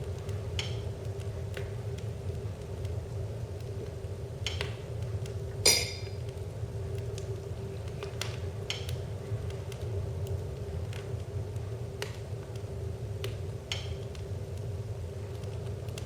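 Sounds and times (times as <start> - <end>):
wood fire crackling: 0.0 - 16.0
steady low hum: 5.1 - 7.6
ringing clink: 5.7 - 6.2.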